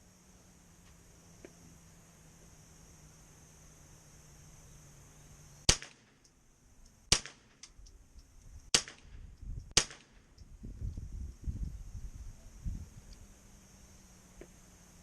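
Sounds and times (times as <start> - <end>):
rifle shots: 5.7 - 6.2, 7.1 - 7.6, 8.7 - 10.2
faint small clicks: 7.6 - 11.8, 13.0 - 13.3.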